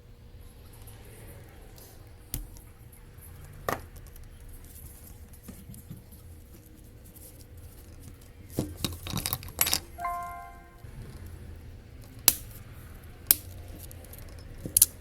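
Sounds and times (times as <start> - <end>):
short steady beep: 10.0 - 10.8.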